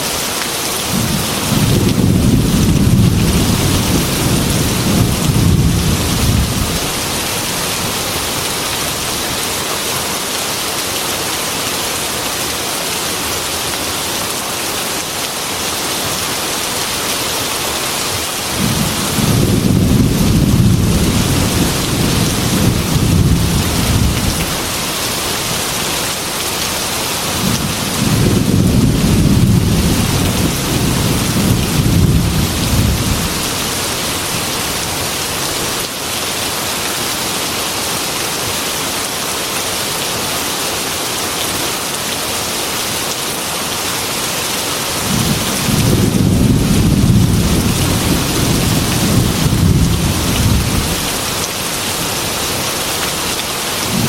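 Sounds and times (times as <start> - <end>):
heavy rain on a window: 0.0 - 54.0
rolling thunder: 0.9 - 7.2, 18.6 - 24.7, 27.4 - 33.5, 45.1 - 51.0.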